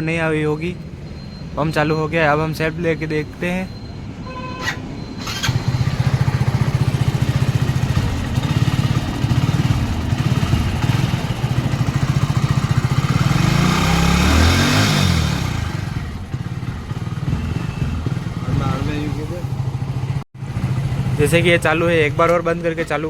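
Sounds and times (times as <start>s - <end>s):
motorcycle engine starting and running: 4.6s - 23.0s
engine revving: 5.2s - 22.1s.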